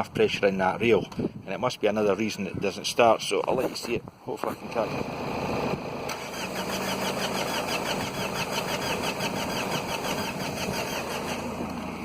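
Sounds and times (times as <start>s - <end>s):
engine cranking without starting: 4.9s - 12.0s.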